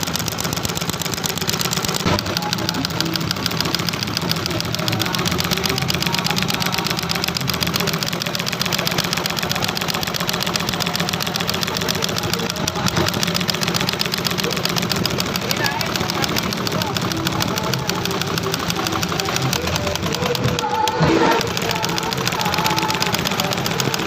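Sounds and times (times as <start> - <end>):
sewing machine clattering: 0.0 - 24.0.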